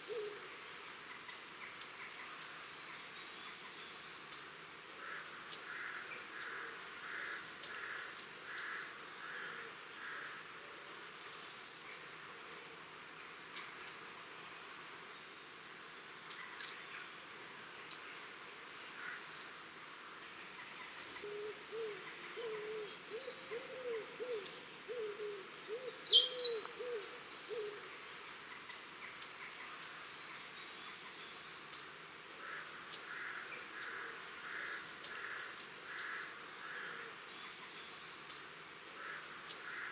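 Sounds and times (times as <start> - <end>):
lower-pitched bird call: 21.2 - 27.8
high-pitched bird calls: 25.7 - 27.1.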